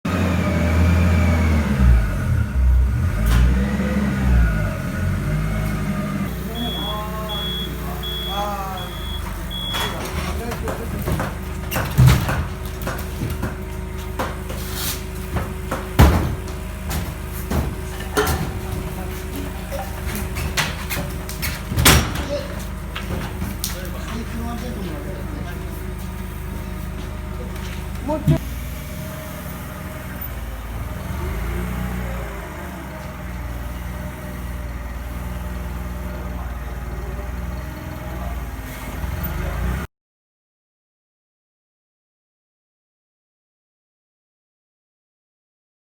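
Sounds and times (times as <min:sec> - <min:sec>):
truck engine idling: 0:00.1 - 0:39.8
metallic clanks and knocks: 0:09.3 - 0:24.3.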